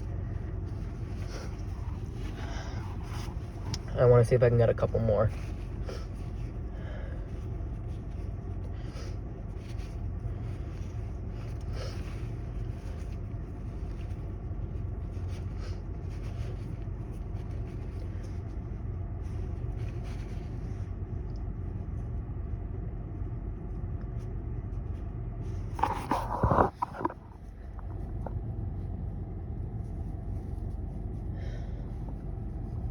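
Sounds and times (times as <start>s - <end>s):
steady low rumble: 0.0s - 32.9s
sniffling through stuffy nose: 0.1s - 3.9s.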